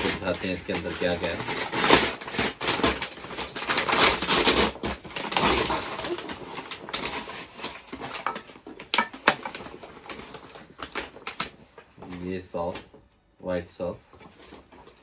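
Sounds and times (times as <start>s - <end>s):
food packaging rustling: 0.0s - 13.0s.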